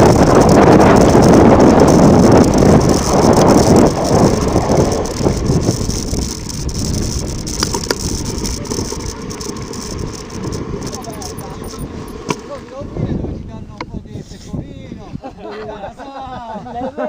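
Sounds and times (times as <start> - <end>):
bike clicks: 0.0 - 12.8
mountain bike tyres and frame rattling: 0.0 - 13.0.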